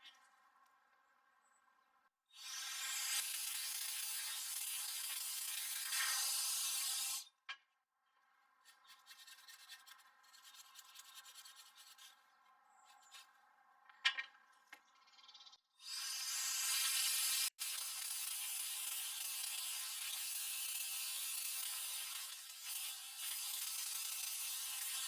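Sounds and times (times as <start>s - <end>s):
air duster hissing: 2.4s - 7.2s
brushing and rubbing: 8.6s - 13.3s.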